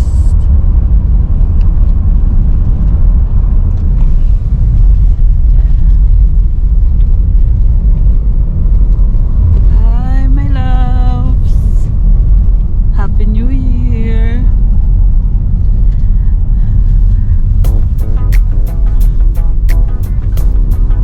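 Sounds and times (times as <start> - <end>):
loud low rumble: 15.0 - 21.0.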